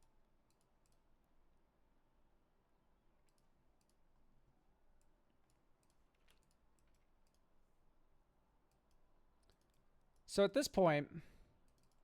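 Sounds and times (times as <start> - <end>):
computer mouse and key clicks: 0.4 - 1.1, 3.2 - 4.1, 5.0 - 7.7, 8.6 - 10.3, 11.6 - 12.0.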